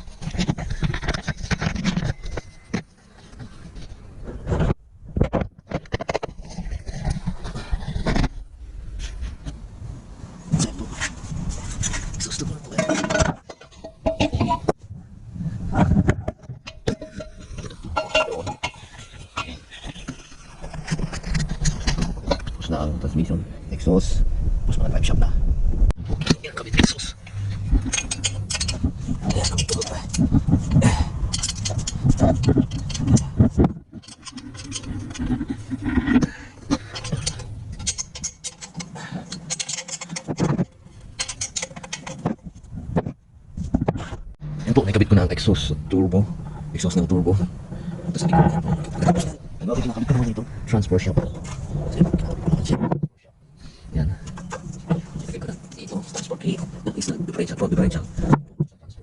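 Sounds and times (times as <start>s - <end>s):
low rumble: 22.1s - 26.3s
hand tools clicking and knocking: 26.2s - 35.4s, 36.6s - 42.5s.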